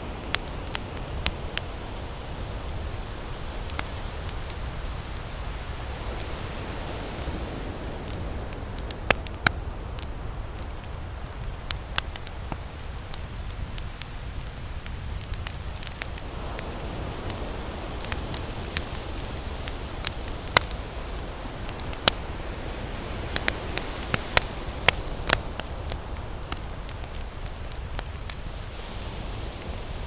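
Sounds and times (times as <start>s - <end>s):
campfire crackling and popping: 0.0s - 30.0s.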